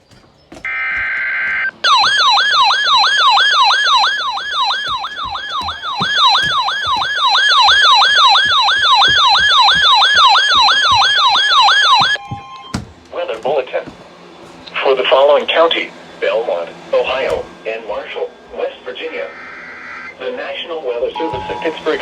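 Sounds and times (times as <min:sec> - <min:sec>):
buzzing data burst: 0:00.7 - 0:12.8
electronic siren-like alert tone: 0:00.7 - 0:12.8, 0:21.1 - 0:22.0.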